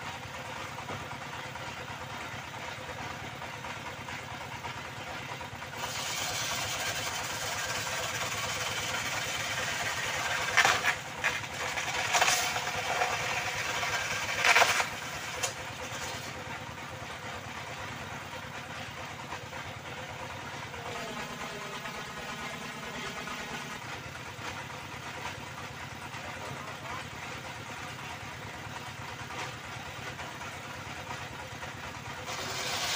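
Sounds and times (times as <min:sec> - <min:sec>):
circular saw running: 0:05.8 - 0:16.4, 0:20.7 - 0:24.0, 0:32.1 - 0:32.9
saw blade biting into wood: 0:09.6 - 0:16.2, 0:32.2 - 0:32.9.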